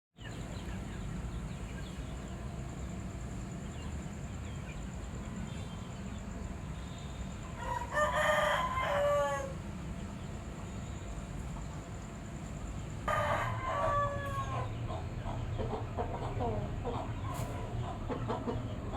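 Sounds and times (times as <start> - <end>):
rooster crowing: 7.6 - 9.7, 13.0 - 15.0.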